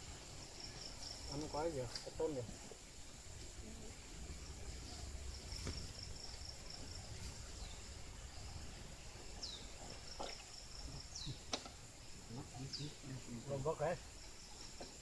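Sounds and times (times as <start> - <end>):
high-pitched insect trill: 0.0 - 15.0
low rumble: 3.3 - 11.2.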